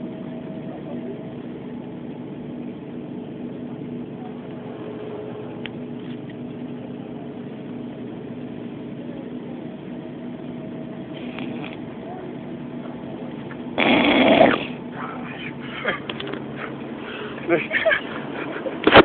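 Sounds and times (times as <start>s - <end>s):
bus engine hum: 0.0s - 19.0s
road rumble: 0.0s - 19.0s.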